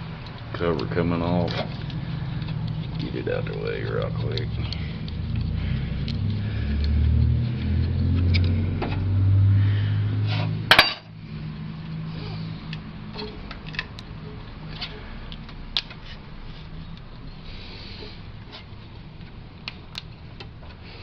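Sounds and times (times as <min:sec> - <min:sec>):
low steady hum: 0:00.0 - 0:21.0
hand tools clinking: 0:10.7 - 0:11.1
sharp metallic clank: 0:10.7 - 0:11.1.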